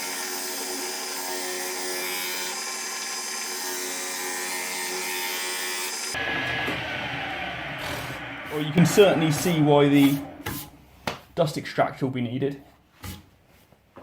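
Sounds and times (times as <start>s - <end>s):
motor hum: 6.0s - 10.5s
low rumble: 6.2s - 10.8s.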